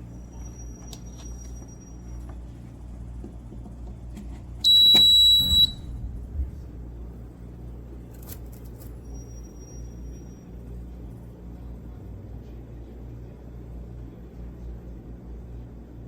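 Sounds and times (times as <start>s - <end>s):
low steady hum: 0.0s - 16.0s
electronic beep: 4.7s - 5.9s.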